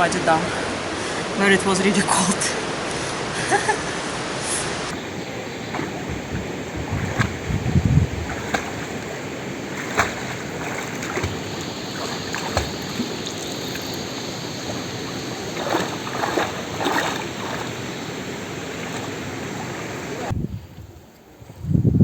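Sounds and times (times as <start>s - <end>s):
rushing water: 0.0s - 20.3s
water splashes: 4.4s - 20.3s.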